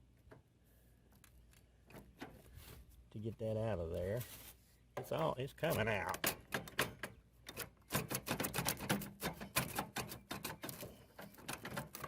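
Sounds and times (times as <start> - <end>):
metallic clicking and knocking: 5.0 - 12.0.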